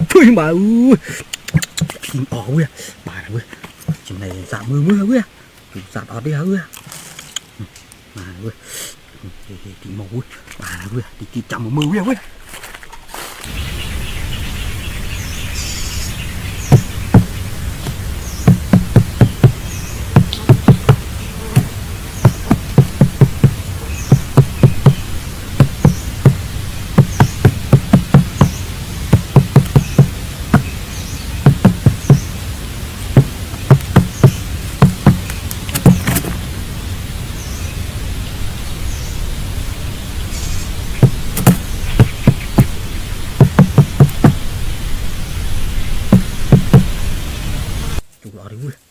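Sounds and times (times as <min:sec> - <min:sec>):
steady background hiss: 0:00.0 - 0:48.9
irregular knocks and taps: 0:01.3 - 0:02.1, 0:03.5 - 0:05.1, 0:16.7 - 0:30.8, 0:31.4 - 0:32.4, 0:33.1 - 0:36.6, 0:41.0 - 0:42.8, 0:43.4 - 0:44.5, 0:46.1 - 0:47.0.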